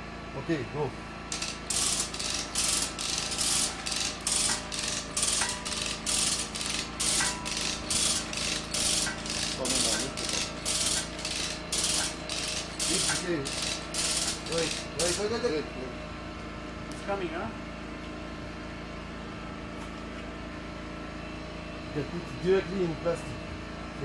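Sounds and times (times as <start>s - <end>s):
hand tool rasping strokes: 1.3s - 15.3s.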